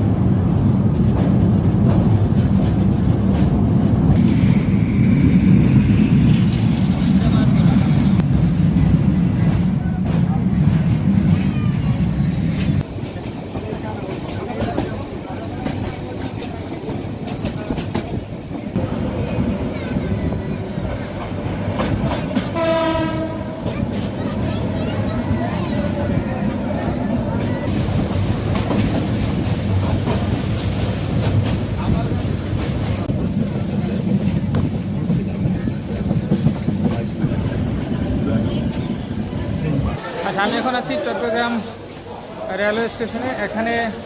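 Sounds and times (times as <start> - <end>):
train wheels rumbling on rails: 0.0 - 44.0
train horn blast: 22.5 - 23.7.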